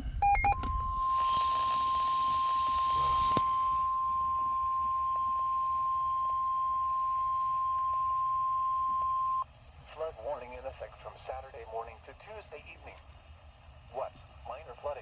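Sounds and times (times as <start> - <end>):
steady alarm tone: 0.0 - 9.4
radio hiss: 0.7 - 9.4.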